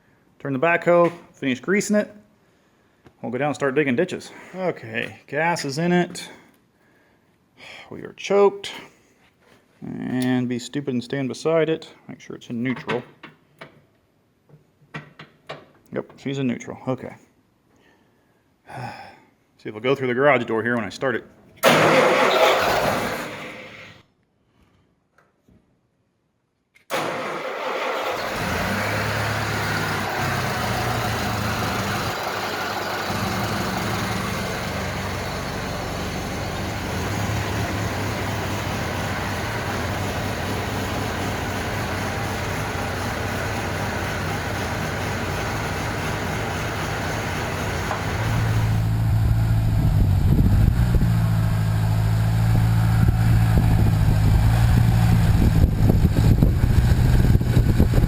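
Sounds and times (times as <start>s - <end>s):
gasoline engine running: 26.9s - 58.0s.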